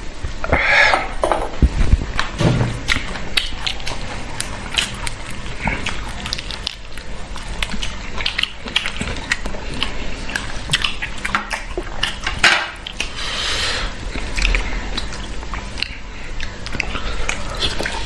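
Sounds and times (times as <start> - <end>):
people chewing and biting: 2.0 - 18.0.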